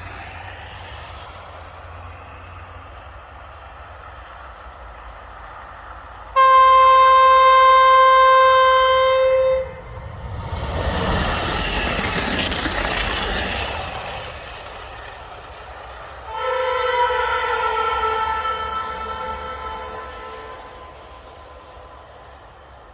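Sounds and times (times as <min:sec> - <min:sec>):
train wheels rushing on rails: 0:00.0 - 0:22.9
chord train horn: 0:06.3 - 0:10.2, 0:16.2 - 0:21.8
train horn blast: 0:06.4 - 0:10.2, 0:16.3 - 0:21.7.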